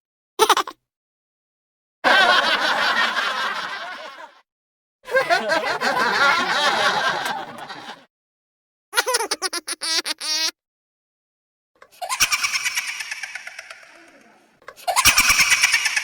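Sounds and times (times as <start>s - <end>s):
laughter: 2.0s - 4.4s, 5.1s - 8.1s, 9.0s - 10.4s, 12.0s - 16.0s.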